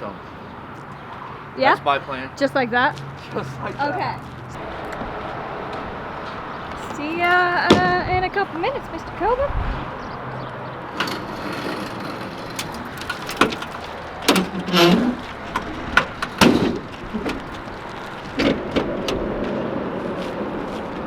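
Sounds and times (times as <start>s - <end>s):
sharp knocks and clatters: 10.9s - 17.6s.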